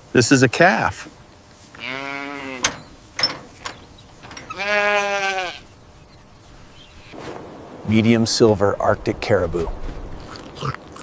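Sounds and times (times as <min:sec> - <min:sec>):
calf bawling: 0:01.8 - 0:02.9, 0:04.3 - 0:05.8.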